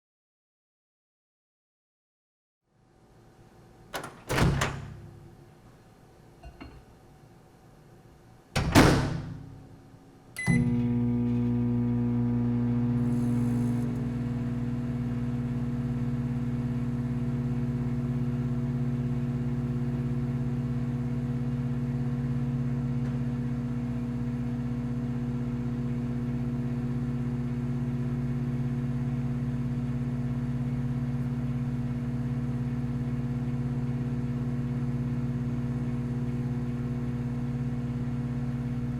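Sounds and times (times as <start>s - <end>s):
microwave hum and fan whir: 3.0s - 38.9s
microwave door banging shut: 4.0s - 5.1s, 8.6s - 9.5s
microwave beep: 10.4s - 12.1s.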